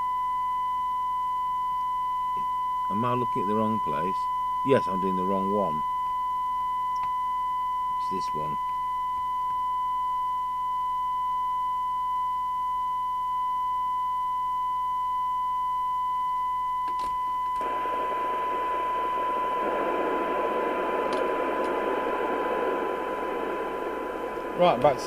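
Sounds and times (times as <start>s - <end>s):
steady test tone: 2.3s - 10.3s, 10.9s - 25.0s
radio receiver noise hiss: 16.9s - 25.0s
click: 21.1s - 21.8s.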